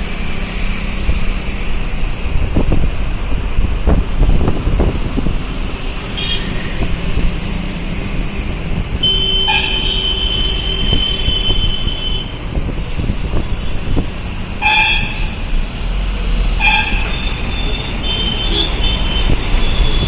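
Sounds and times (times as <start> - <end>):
road traffic rumbling: 0.0 - 20.0
vehicle horns honking: 6.2 - 6.6, 9.0 - 12.3, 14.6 - 15.4, 16.6 - 20.0.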